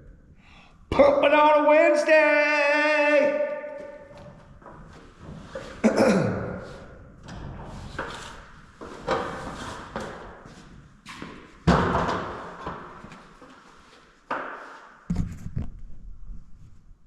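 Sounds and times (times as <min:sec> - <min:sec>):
sharp knocks and thuds: 0:11.6 - 0:12.9, 0:14.4 - 0:15.8.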